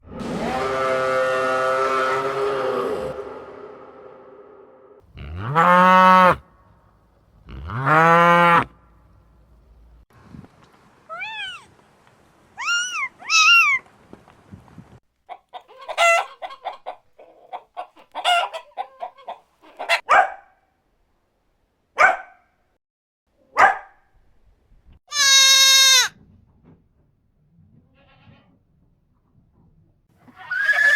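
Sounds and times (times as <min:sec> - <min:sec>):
higher arching animal calls: 0:12.6 - 0:13.8
chicken clucking: 0:15.2 - 0:20.0.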